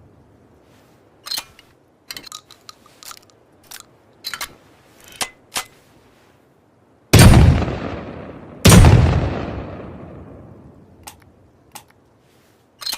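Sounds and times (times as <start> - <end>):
metallic clicks of gun action: 1.2 - 5.8, 11.0 - 12.0
loud gunshot ringing out: 7.2 - 10.1.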